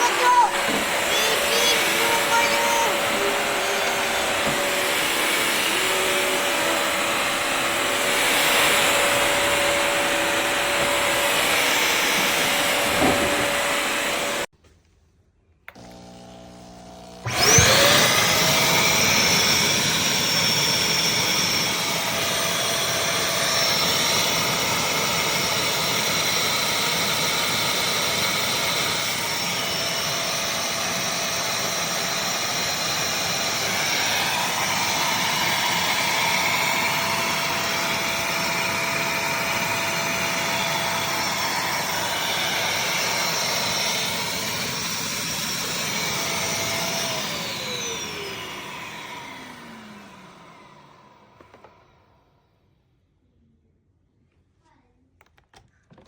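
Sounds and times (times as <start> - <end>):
floor cleaner motor whirring: 0.0 - 14.5, 15.7 - 52.4.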